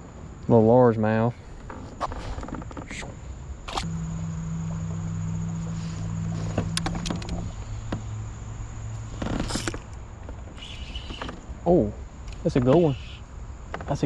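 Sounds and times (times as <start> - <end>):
low steady hum: 0.0 - 13.8
sharp clicks: 3.7 - 3.9
high-pitched insect drone: 3.7 - 11.8.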